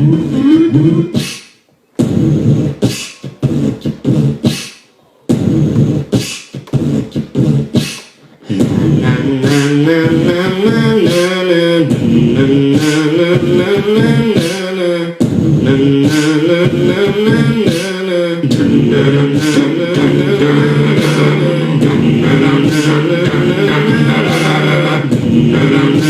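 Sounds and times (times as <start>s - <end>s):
beatboxed beat: 0.0s - 26.0s
steady low vocal note: 8.4s - 26.0s
layered sung vocals: 8.5s - 26.0s.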